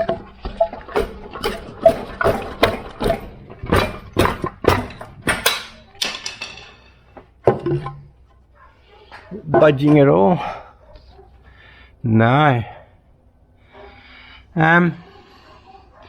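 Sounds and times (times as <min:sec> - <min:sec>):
hammer striking wood block: 0:00.0 - 0:07.6.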